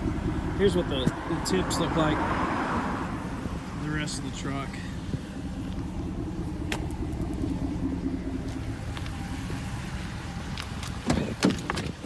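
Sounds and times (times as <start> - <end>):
truck engine idling: 0.0 - 12.0
clunk: 10.6 - 12.0.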